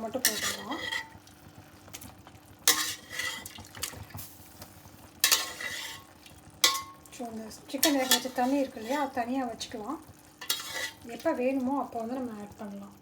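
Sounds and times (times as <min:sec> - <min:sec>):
metal spoon scraping steel pot: 0:00.2 - 0:01.2, 0:02.7 - 0:03.5, 0:05.2 - 0:07.0, 0:07.8 - 0:09.2, 0:10.4 - 0:11.0.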